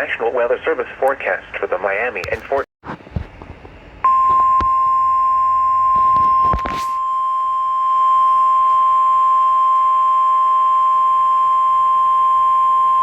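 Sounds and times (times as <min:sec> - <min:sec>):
static crackle: 0:00.6 - 0:03.7.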